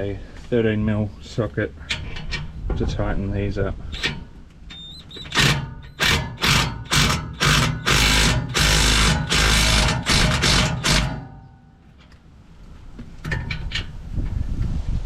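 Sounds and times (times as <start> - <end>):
power tool spinning socket: 4.0 - 11.2.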